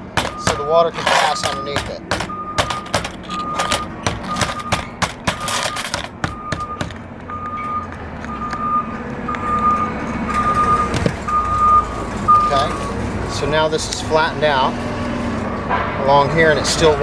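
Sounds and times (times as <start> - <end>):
snips clipping metal panel: 0.0 - 7.0
reversing alarm beeps: 0.2 - 12.9.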